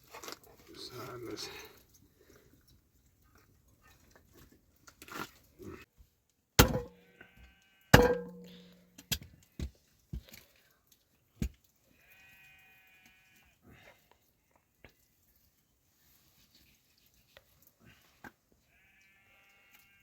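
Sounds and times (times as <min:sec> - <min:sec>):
loud ringing knocks: 0:08.0 - 0:08.5.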